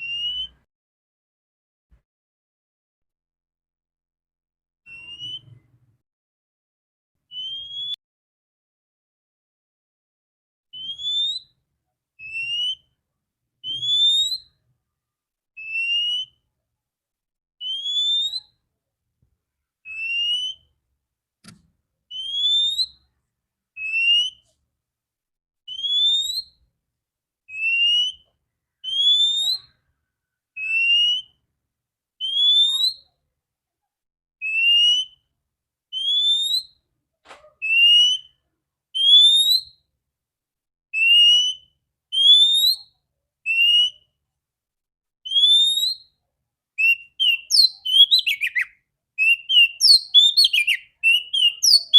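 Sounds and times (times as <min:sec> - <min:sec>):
bird calling in clear whistles: 0:00.0 - 0:00.7, 0:04.9 - 0:05.6, 0:07.3 - 0:08.0, 0:10.7 - 0:11.6, 0:13.6 - 0:14.6, 0:15.6 - 0:16.4, 0:17.6 - 0:18.6, 0:19.9 - 0:20.7, 0:22.1 - 0:23.1, 0:25.7 - 0:26.6, 0:27.5 - 0:29.8, 0:32.2 - 0:33.1, 0:34.4 - 0:35.2, 0:35.9 - 0:36.8, 0:37.6 - 0:38.4, 0:39.0 - 0:39.8, 0:41.0 - 0:42.9, 0:45.3 - 0:46.1, 0:46.8 - 0:51.9.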